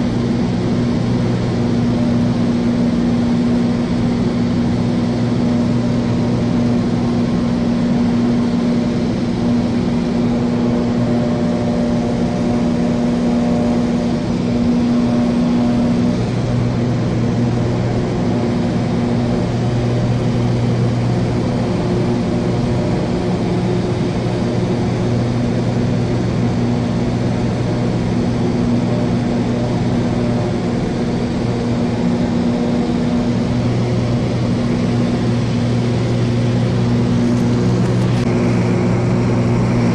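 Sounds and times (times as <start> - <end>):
light aircraft engine droning: 0.0 - 39.9
rush of air: 33.9 - 39.9.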